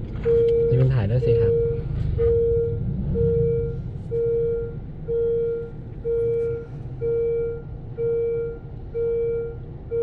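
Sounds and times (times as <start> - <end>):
idling traffic rumble: 0.0 - 10.0
level crossing warning beeps: 0.2 - 10.0.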